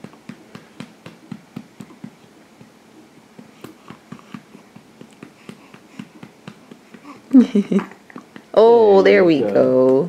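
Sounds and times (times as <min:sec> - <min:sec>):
hand patting baby's back: 0:00.0 - 0:07.9.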